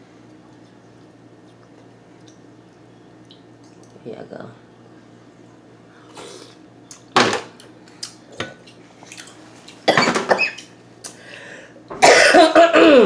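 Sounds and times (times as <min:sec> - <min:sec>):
person coughing: 0:09.9 - 0:10.6, 0:12.0 - 0:13.0.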